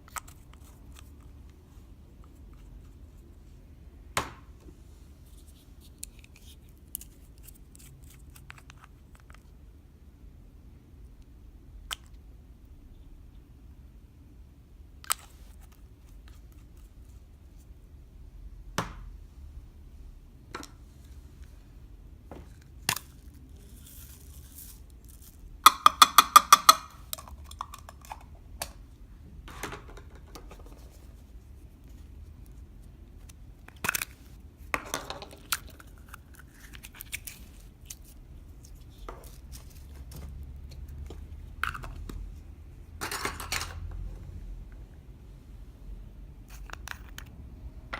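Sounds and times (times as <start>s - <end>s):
rustling and scraping: 29.5s - 42.4s.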